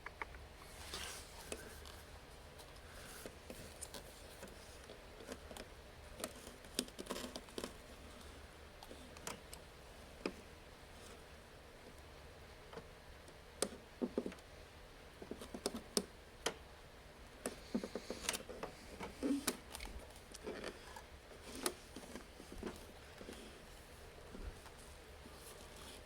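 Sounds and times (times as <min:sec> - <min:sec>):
clicks taps and rattles of hand work: 0:13.6 - 0:14.5, 0:15.2 - 0:16.6.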